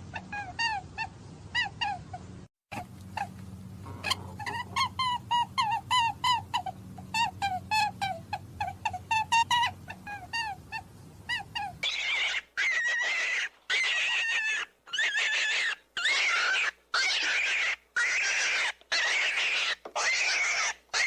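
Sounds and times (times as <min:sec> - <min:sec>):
rabbit squeaking and squealing: 0:00.0 - 0:21.0.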